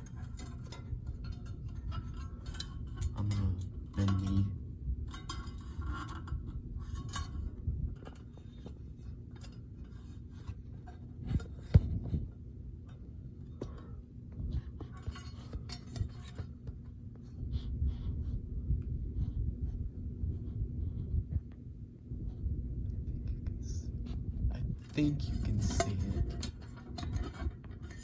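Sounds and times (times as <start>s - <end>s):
metal grille clinks and rattles: 0.0s - 16.6s, 24.8s - 28.0s
steady low hum: 0.0s - 28.0s.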